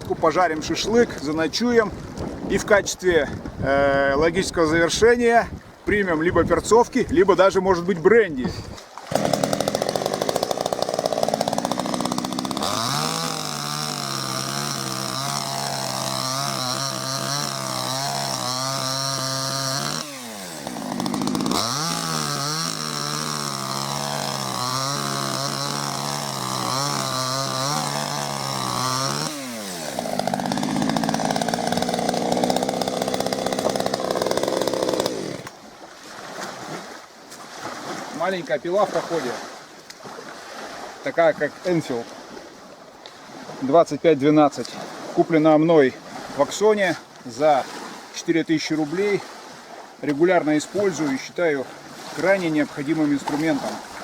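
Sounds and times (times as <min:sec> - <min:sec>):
chainsaw cutting dry wood: 0:09.1 - 0:35.6, 0:50.1 - 0:54.0.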